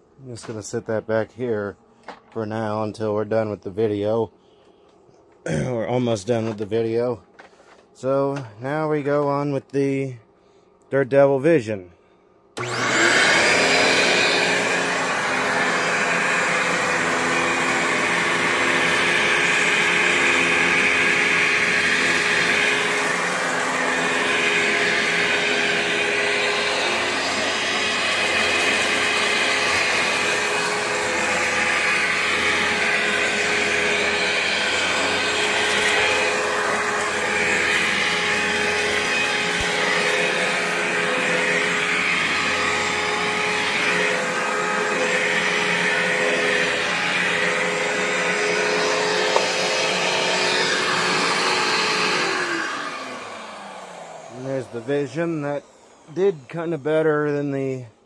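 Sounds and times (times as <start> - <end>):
vacuum cleaner running: 12.6 - 58.0.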